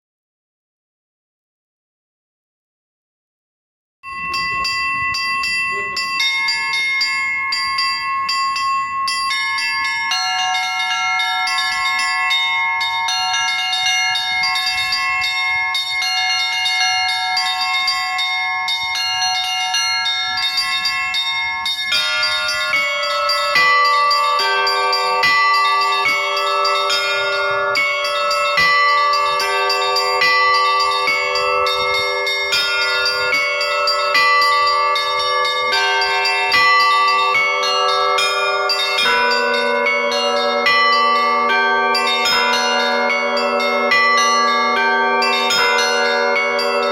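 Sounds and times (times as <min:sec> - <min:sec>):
deep church bells: 0:04.0 - 0:46.9
small high church bells: 0:04.0 - 0:46.9.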